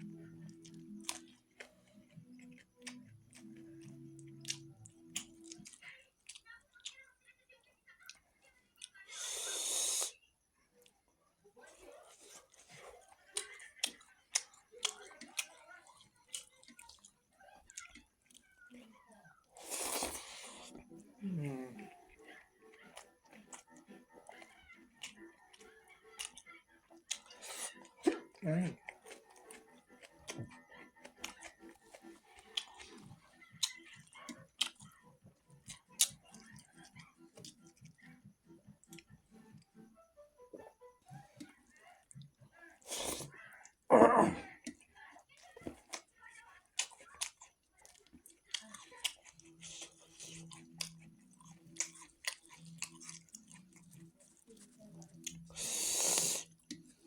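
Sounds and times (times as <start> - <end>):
person chewing food: 0.0 - 7.0, 8.0 - 10.2, 10.8 - 39.7, 40.5 - 57.0
wet smacking clicks: 51.6 - 55.6.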